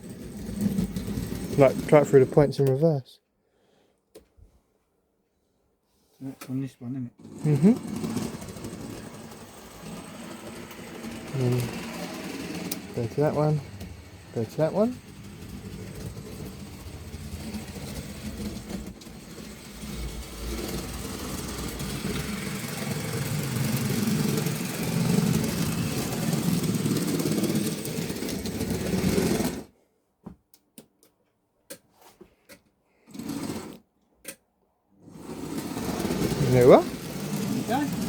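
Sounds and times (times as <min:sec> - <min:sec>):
model train motor running: 0:00.0 - 0:02.8, 0:07.2 - 0:29.7, 0:35.1 - 0:38.0
train wheels rolling over track: 0:00.0 - 0:02.8, 0:07.2 - 0:29.7, 0:35.1 - 0:38.0.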